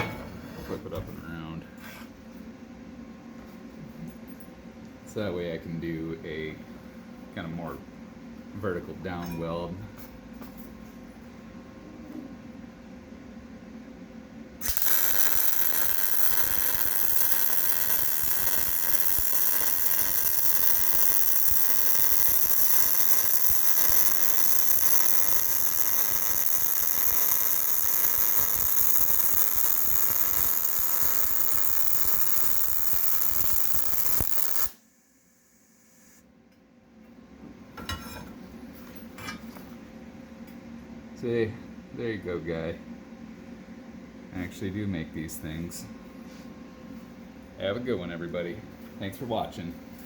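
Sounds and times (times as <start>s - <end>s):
welding arc sizzle: 14.6s - 36.2s.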